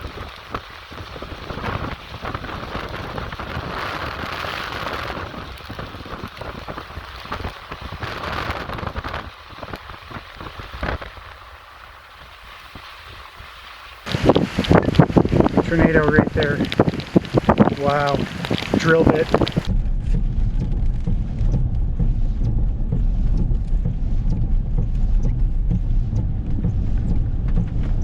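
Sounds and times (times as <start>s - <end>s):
heavy rain falling: 0.0s - 19.7s
gusty wind noise: 0.0s - 28.0s.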